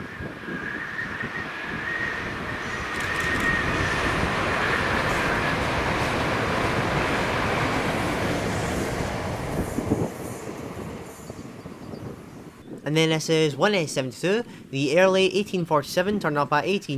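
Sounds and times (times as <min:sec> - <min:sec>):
train wheels rumbling on rail: 0:00.0 - 0:12.7.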